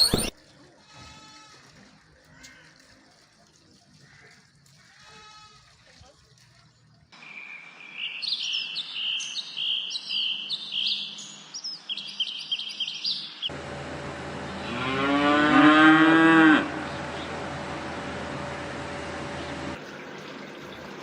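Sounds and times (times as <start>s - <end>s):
cow mooing: 14.6s - 16.8s.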